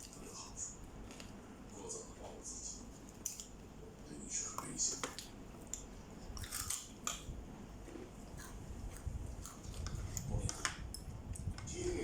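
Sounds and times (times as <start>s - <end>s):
person chewing food: 4.5s - 12.0s.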